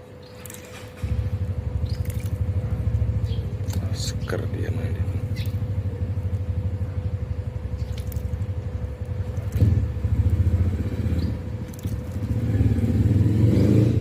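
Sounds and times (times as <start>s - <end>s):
thin steady hum: 0.0s - 13.2s
car engine idling: 0.7s - 13.3s.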